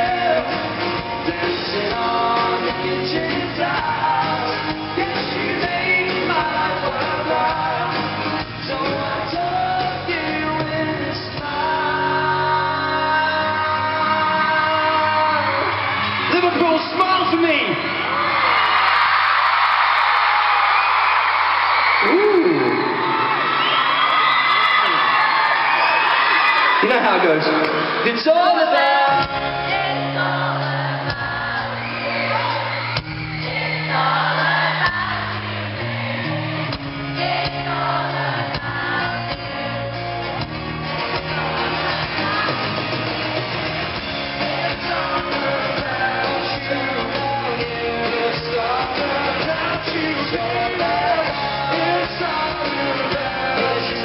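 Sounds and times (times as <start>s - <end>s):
voices singing and shouting: 0.0s - 16.8s, 18.1s - 54.0s
live pop-rock band: 0.0s - 54.0s.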